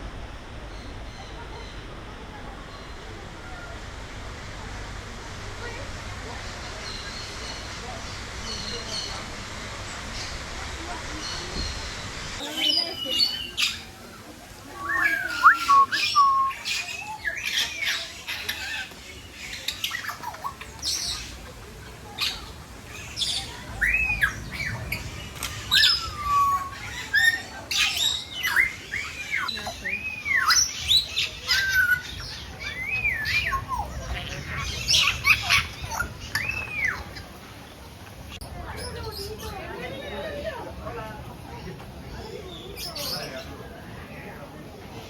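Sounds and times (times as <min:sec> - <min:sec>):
parrots whistling: 0:14.9 - 0:16.8
parrots squawking and screeching: 0:22.1 - 0:37.2.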